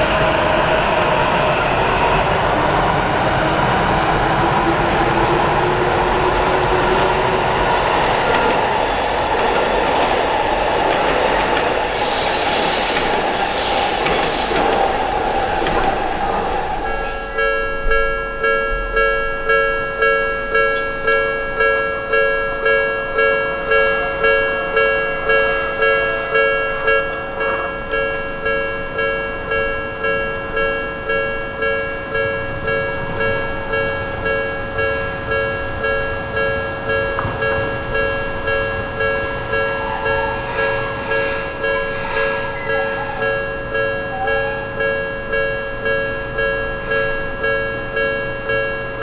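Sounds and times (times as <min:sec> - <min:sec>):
level-crossing alarm bell ringing: 0:00.0 - 0:12.0, 0:14.8 - 0:49.0.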